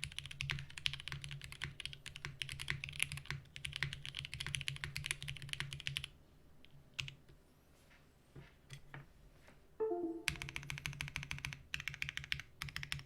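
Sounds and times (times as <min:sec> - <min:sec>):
mechanical keyboard typing: 0:00.0 - 0:06.1, 0:10.3 - 0:13.0.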